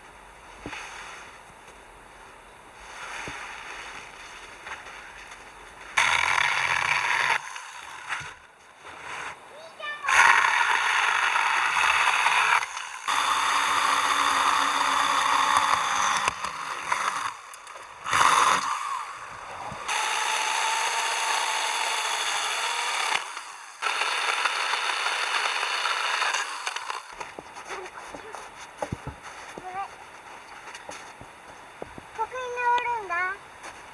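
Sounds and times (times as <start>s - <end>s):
battery pruning saw cutting wood: 6.0s - 8.5s, 9.8s - 28.4s.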